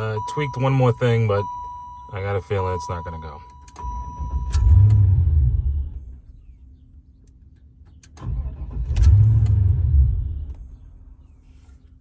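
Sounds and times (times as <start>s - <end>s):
car engine starting and stalling: 3.8s - 6.3s, 7.9s - 10.8s
engine cranking: 8.2s - 9.6s.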